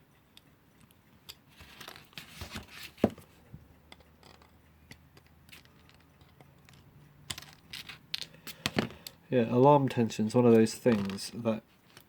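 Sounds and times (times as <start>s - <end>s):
clock parts clicking and rustling: 3.8s - 9.2s, 10.3s - 12.0s.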